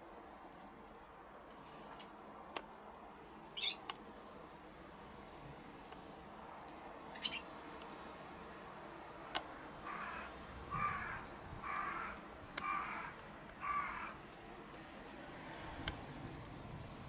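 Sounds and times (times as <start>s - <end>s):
crow cawing: 9.8s - 14.2s.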